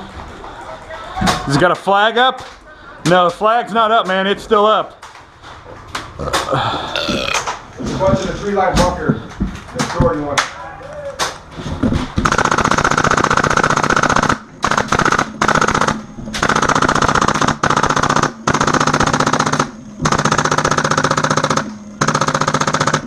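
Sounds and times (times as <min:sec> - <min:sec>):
airsoft machine gun firing bursts: 0:12.2 - 0:23.0.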